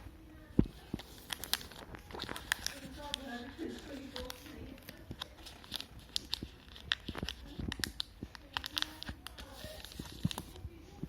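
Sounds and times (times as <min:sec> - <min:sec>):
plastic wrappers crinkling: 0:00.7 - 0:10.7.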